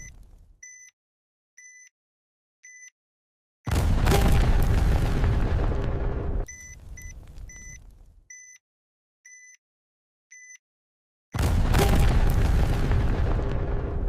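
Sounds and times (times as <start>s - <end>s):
bomb explosion with deep rumble: 3.7s - 8.2s, 11.4s - 14.0s
bomb timer high beeps: 6.5s - 8.6s, 9.3s - 9.6s.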